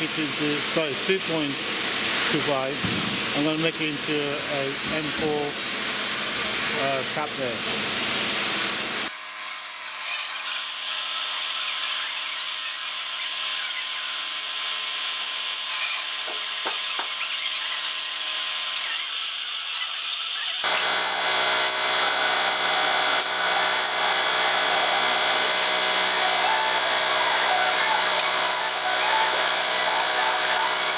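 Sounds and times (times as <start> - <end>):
lathe motor whine: 20.6 - 30.9.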